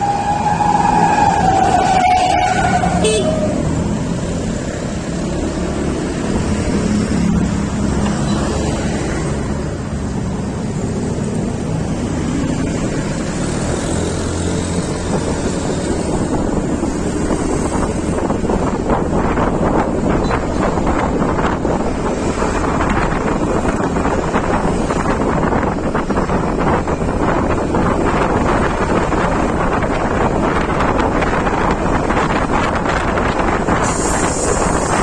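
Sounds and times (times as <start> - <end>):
engines and road noise rumble: 0.0 - 35.0
vehicle horn: 1.8 - 3.6.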